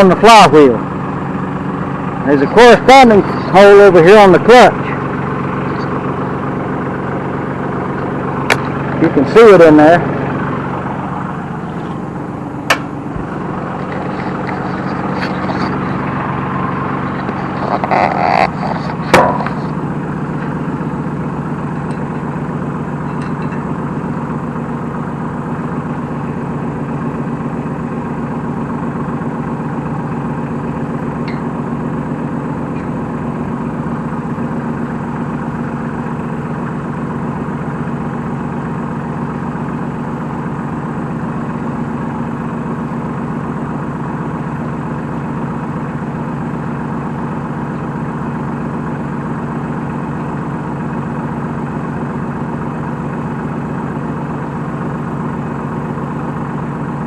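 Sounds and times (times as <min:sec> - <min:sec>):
tractor diesel engine idling: 0:00.0 - 0:57.0
sharp metal knocks: 0:12.6 - 0:13.0.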